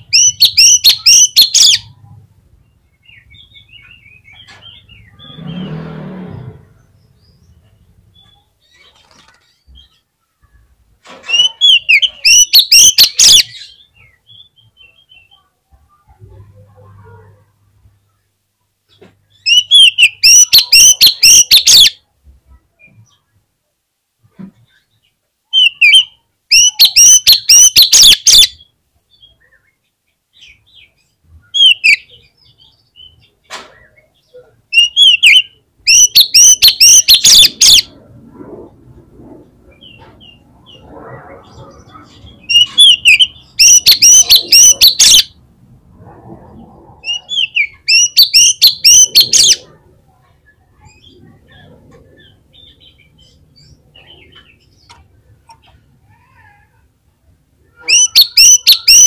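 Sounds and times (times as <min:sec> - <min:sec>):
bird song bursts: 0:00.0 - 0:02.0, 0:02.6 - 0:10.0, 0:11.3 - 0:15.5, 0:19.3 - 0:22.0, 0:24.7 - 0:38.0, 0:39.7 - 0:45.4, 0:46.5 - 0:49.7, 0:57.7 - 0:59.0
bird whistles: 0:25.6 - 0:28.6, 0:34.8 - 0:37.9, 0:42.5 - 0:45.3, 0:47.0 - 0:49.6, 0:57.9 - 0:59.0.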